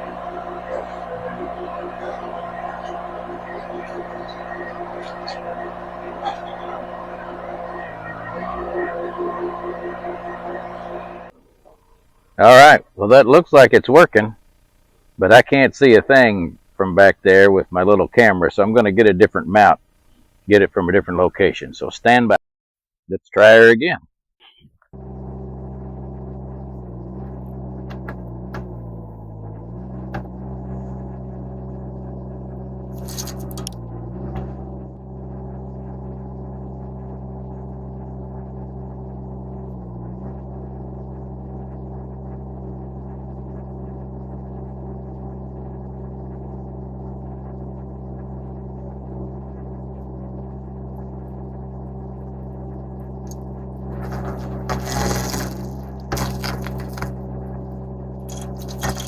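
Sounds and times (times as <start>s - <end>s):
stump grinder grinding: 0.0s - 11.3s, 33.0s - 33.8s, 53.2s - 57.3s, 58.3s - 59.0s
engine running: 0.0s - 12.4s, 25.0s - 59.0s.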